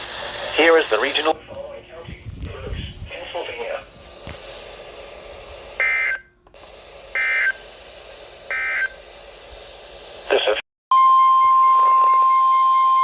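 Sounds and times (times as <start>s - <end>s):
data burst tones: 5.8s - 6.3s, 7.1s - 7.7s, 8.5s - 9.0s.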